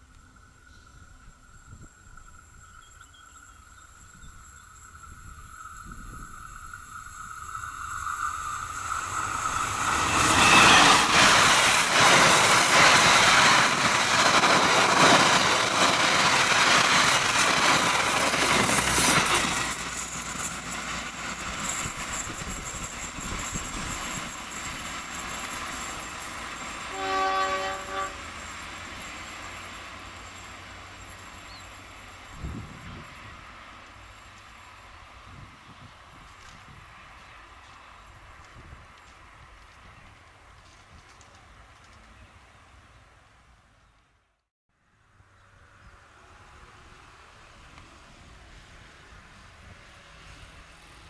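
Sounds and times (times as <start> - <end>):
train passing at speed: 0.0 - 44.0, 44.8 - 51.0
train horn blast: 26.9 - 28.3.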